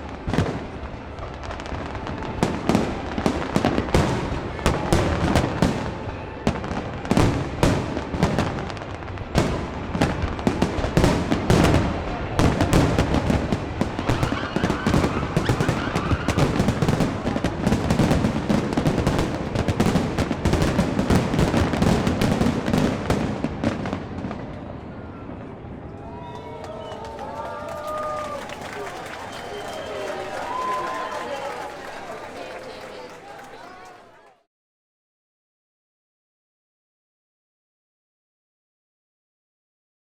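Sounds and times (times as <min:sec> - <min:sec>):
fireworks bangs and crackling: 0:00.0 - 0:26.2.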